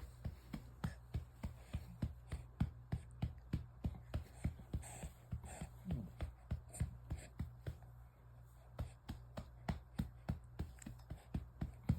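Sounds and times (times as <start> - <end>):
hand patting baby's back: 8.7 - 11.9.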